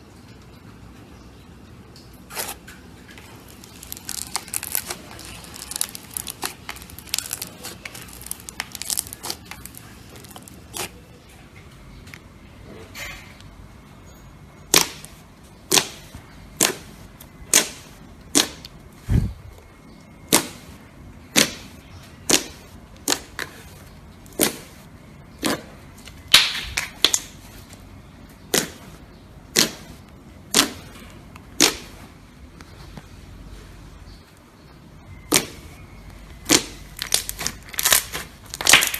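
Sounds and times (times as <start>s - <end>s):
slime popping: 3.4s - 10.9s, 29.5s - 30.9s, 31.6s - 32.0s, 36.4s - 38.9s.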